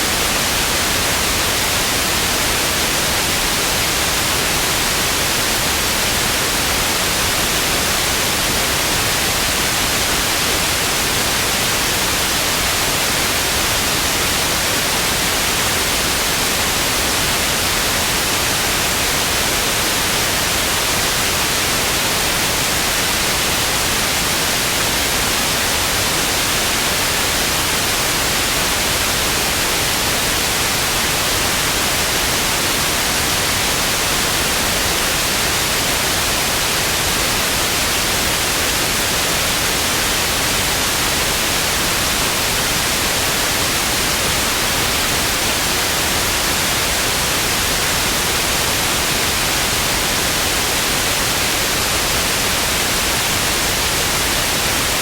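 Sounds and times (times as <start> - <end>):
television static hiss: 0.0 - 55.0.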